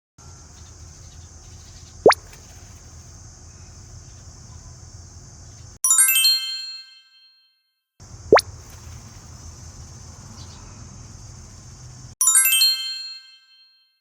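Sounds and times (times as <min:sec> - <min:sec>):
background hiss and rumble: 0:00.2 - 0:05.8, 0:08.0 - 0:12.2
descending chime tones: 0:12.2 - 0:13.6.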